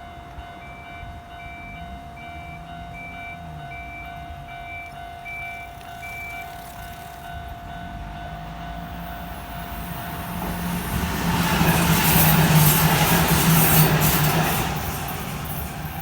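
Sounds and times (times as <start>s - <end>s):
level crossing alarm ringing: 0.0s - 11.2s
electric train passing: 0.0s - 16.0s.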